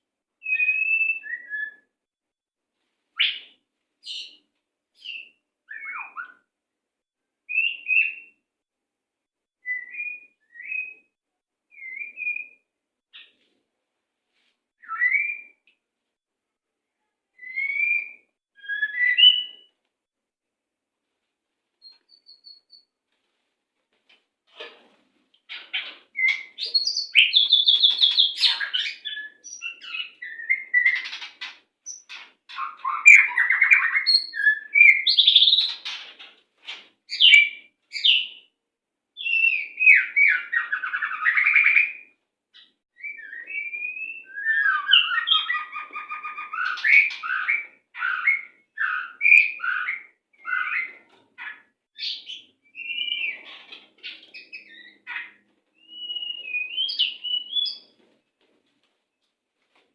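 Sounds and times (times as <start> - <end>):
songbird singing whistles and trills: 0.4 - 2.0, 5.0 - 6.5, 7.5 - 8.4, 9.6 - 13.3, 14.8 - 15.6, 17.4 - 19.7, 21.8 - 22.9, 26.2 - 31.2, 31.9 - 35.8, 37.1 - 38.5, 39.2 - 51.0, 52.0 - 57.9.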